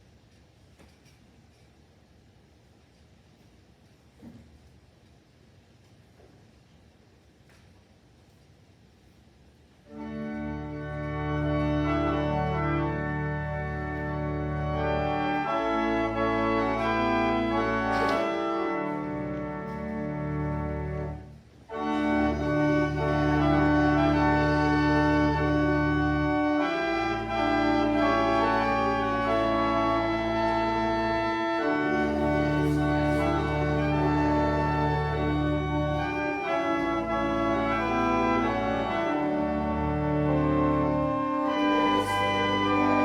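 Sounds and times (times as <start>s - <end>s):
church organ playing a hymn: 9.9s - 43.0s.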